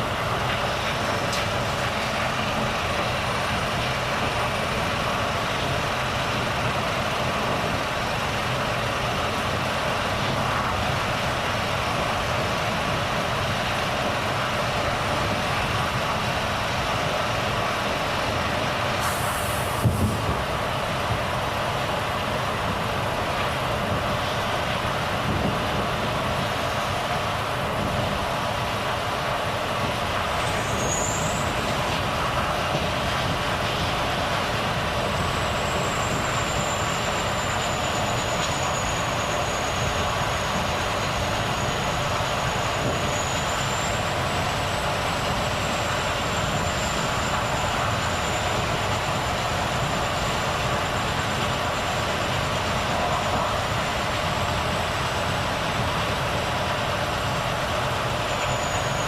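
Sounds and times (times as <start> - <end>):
truck engine and road noise: 0.0 - 59.0
faint high whistle: 30.6 - 31.6, 58.3 - 59.0.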